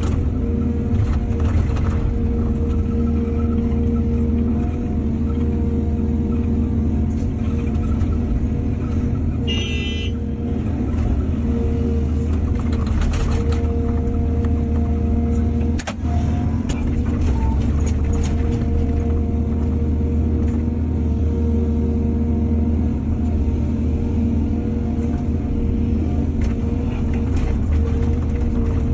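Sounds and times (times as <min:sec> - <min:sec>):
excavator diesel engine under load: 0:00.0 - 0:28.9
knocks and clunks: 0:12.2 - 0:19.7, 0:26.3 - 0:28.9.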